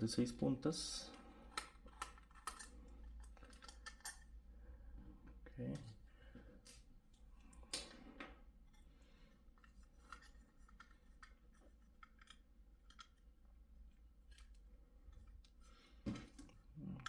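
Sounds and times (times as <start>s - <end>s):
screwdriver clicks and scratches: 1.5s - 4.2s.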